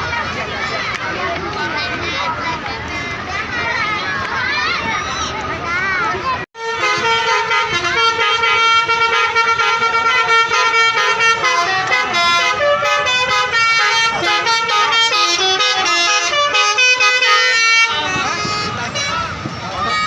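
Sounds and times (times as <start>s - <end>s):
musical bus air horns: 6.6s - 19.4s.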